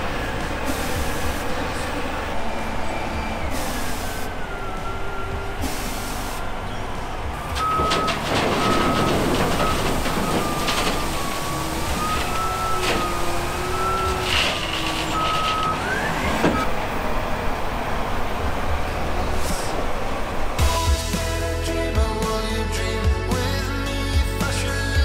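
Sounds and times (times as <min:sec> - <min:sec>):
heavy truck engine rumble: 0:00.0 - 0:25.0
reversing alarm beeping: 0:02.5 - 0:16.8.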